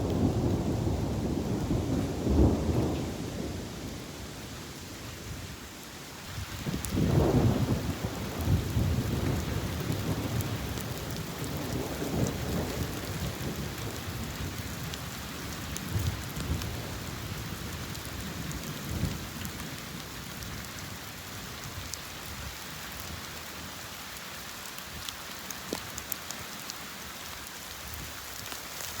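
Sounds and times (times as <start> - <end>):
thunder rumbling: 0.0 - 4.5, 6.3 - 20.7
rain hissing: 0.0 - 29.0.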